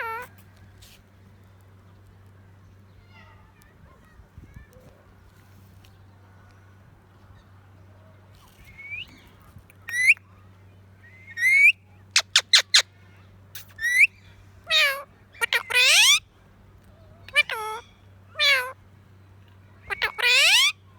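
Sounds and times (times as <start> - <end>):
parakeet chirping: 11.4 - 12.8, 14.7 - 16.2, 19.9 - 20.7
sharp clipped bird notes: 13.6 - 14.1.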